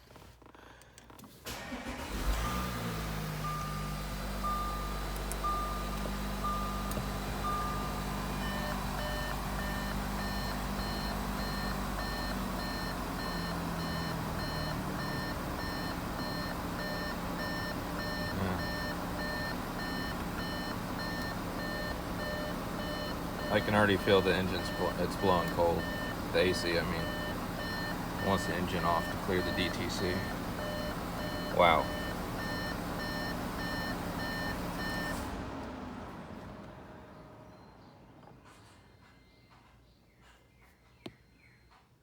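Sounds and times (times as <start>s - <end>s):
car engine starting and idling: 0.4s - 38.8s
warning chime beeping: 3.4s - 35.2s.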